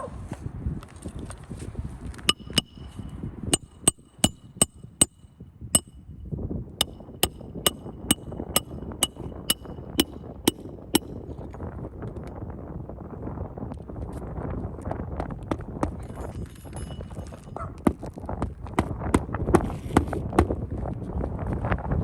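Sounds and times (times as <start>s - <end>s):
hammer striking nails: 2.3s - 5.2s, 6.8s - 11.1s.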